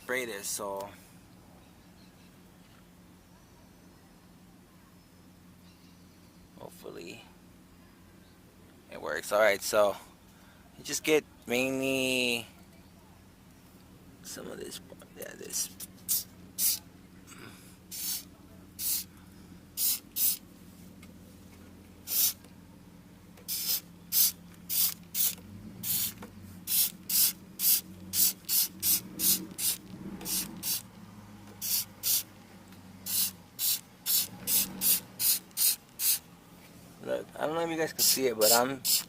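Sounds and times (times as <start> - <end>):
low steady hum: 0.0 - 39.0
spray bottle squirting: 16.0 - 16.8, 17.9 - 19.1, 19.8 - 20.4, 22.1 - 22.4, 23.4 - 30.8, 31.6 - 32.3, 33.0 - 36.2, 38.0 - 39.0.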